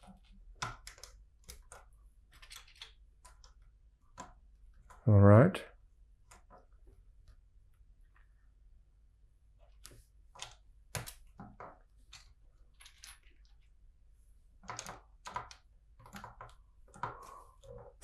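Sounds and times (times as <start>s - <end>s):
plastic bricks clicking: 14.6s - 17.2s.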